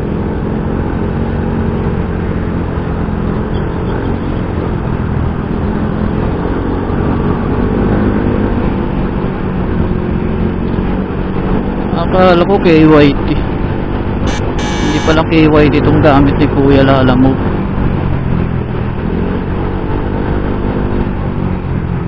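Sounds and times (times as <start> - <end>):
road and wind noise: 0.0 - 22.0
scooter engine running: 14.3 - 15.2.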